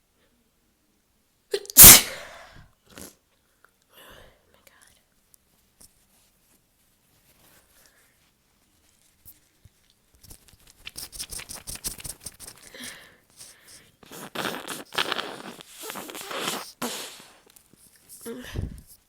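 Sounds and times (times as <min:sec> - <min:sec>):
person blowing nose: 0:01.8 - 0:02.4, 0:11.0 - 0:17.5
paper tissue crinkling: 0:08.8 - 0:18.2.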